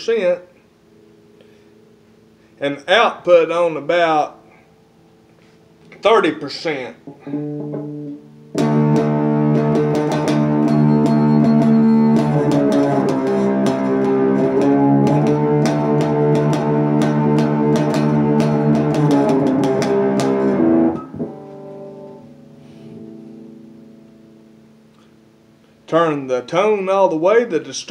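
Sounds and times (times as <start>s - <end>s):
distorted electric guitar chords: 7.0s - 25.8s.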